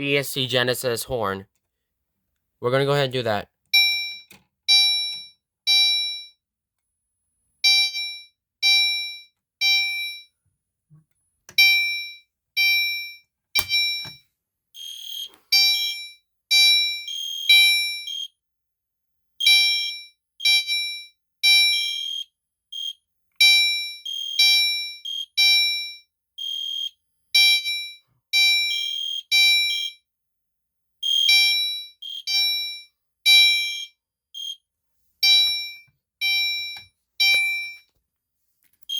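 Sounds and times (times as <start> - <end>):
fire alarm chime tones: 11.6 - 14.2, 14.8 - 18.4, 19.4 - 30.0, 31.0 - 34.6
sharp click: 13.6 - 13.8.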